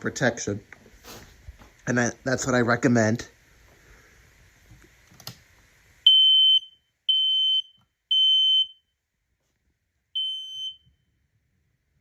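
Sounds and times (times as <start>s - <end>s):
smoke alarm beeps: 6.0s - 9.0s, 10.2s - 11.1s.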